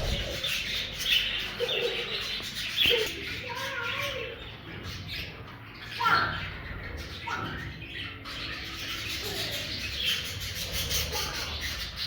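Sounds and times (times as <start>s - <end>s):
budgerigars chirping: 0.0s - 12.0s.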